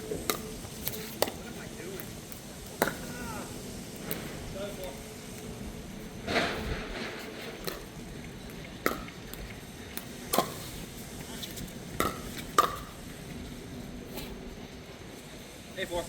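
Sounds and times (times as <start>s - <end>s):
paddles hitting pickleball: 0.1s - 3.2s, 7.5s - 13.0s.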